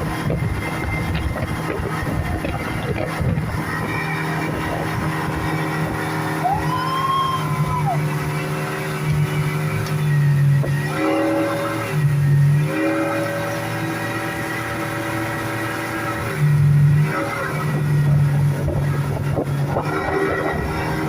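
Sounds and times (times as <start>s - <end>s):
speedboat engine running: 0.0s - 21.0s.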